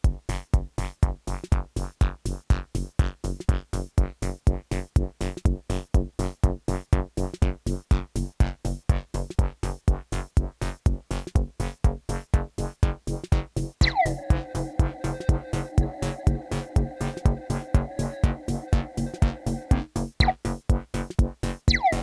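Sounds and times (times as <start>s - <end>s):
kick drum: 0.0s - 22.0s
synth filter sweeps: 13.8s - 20.0s
techno on analogue synthesizers: 13.8s - 20.4s, 21.7s - 22.0s.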